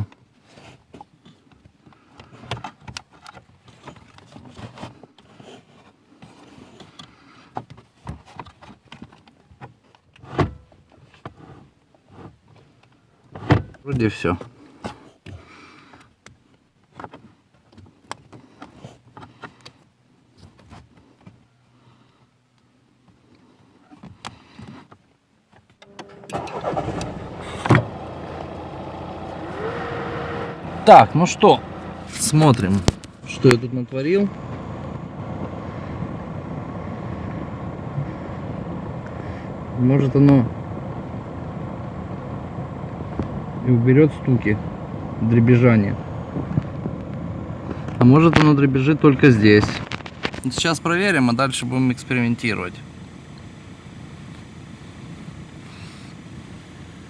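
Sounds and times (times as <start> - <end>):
car engine starting and running: 25.8 - 57.0.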